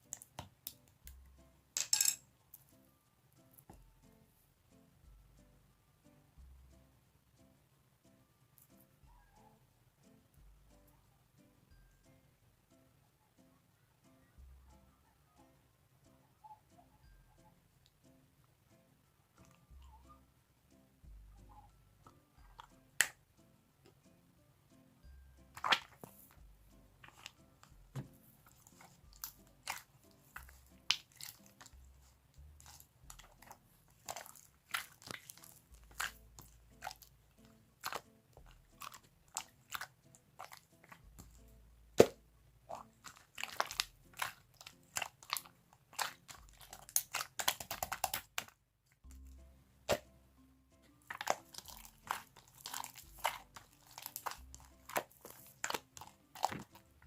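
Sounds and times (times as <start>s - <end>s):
slime squeezed by hand clicking: 43.4s - 48.5s.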